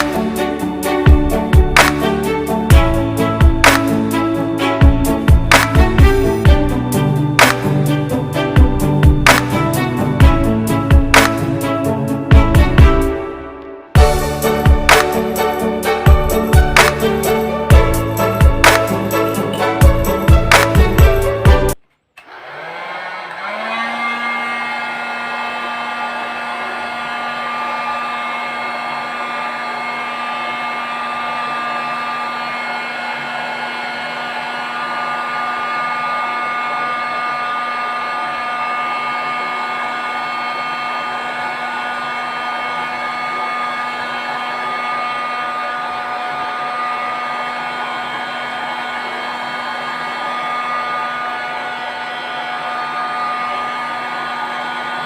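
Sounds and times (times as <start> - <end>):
heat gun fan humming: 22.2 - 55.0.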